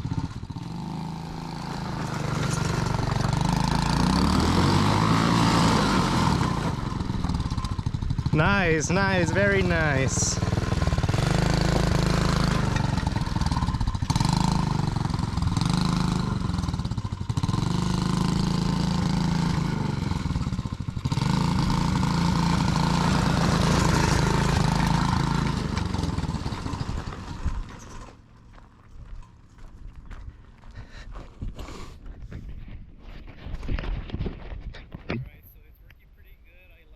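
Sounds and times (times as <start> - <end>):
small engine revving: 0.0 - 28.2.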